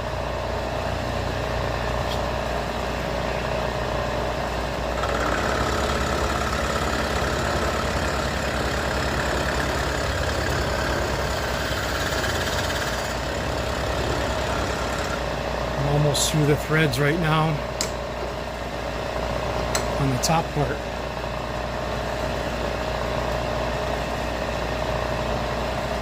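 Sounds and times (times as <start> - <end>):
milling machine motor hum: 0.0 - 26.0
high-pitched cutter whine: 5.0 - 15.3.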